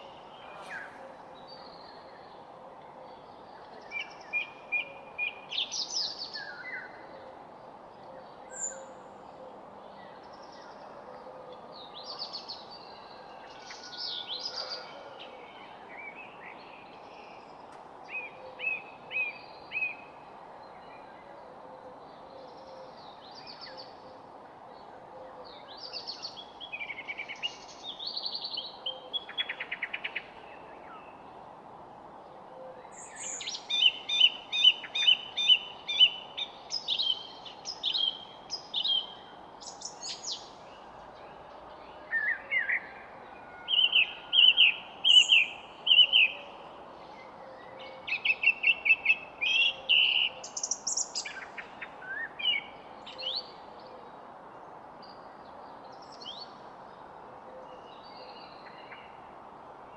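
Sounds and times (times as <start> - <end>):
songbirds chirping and trilling: 0.0 - 59.9
steady background hiss: 15.5 - 59.9.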